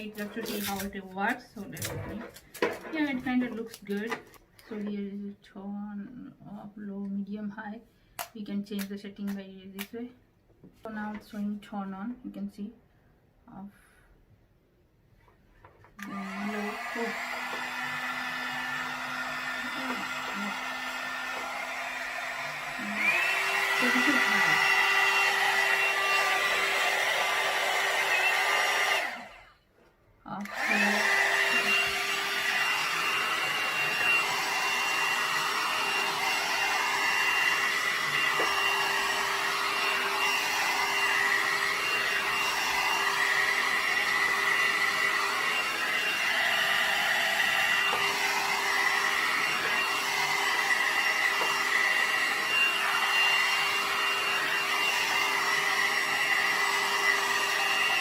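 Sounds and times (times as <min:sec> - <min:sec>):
hair dryer brush whining: 0:00.0 - 0:04.9, 0:15.9 - 0:29.6, 0:30.3 - 0:58.0.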